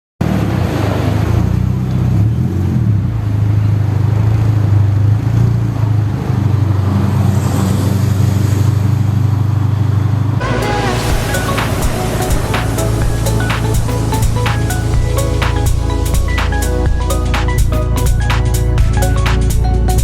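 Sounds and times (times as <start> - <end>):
car engine running: 10.4 - 20.0.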